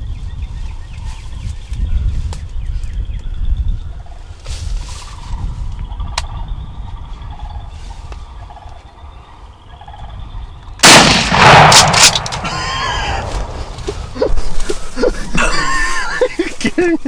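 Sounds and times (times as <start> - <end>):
quiet woods ambience: 0.0 - 11.2, 11.9 - 17.0
shotgun blast echoing: 10.8 - 13.6.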